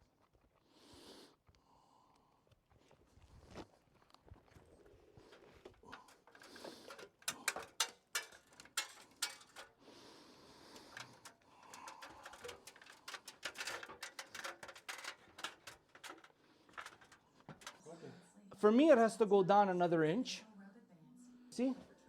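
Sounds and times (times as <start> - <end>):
tools and parts clicking and scraping: 5.2 - 17.9.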